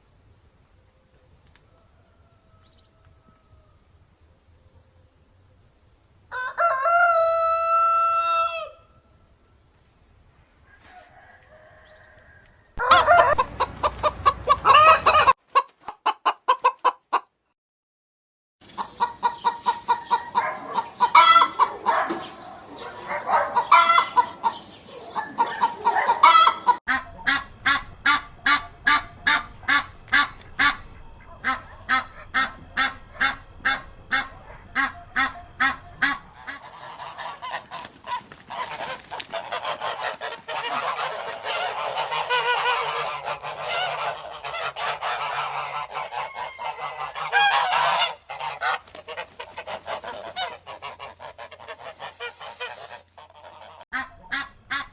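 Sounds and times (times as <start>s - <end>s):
rooster crowing: 1.6s - 4.0s, 6.3s - 9.2s, 10.7s - 15.4s, 30.6s - 36.6s, 39.6s - 48.2s
chickens clucking: 10.7s - 17.3s, 18.6s - 54.9s.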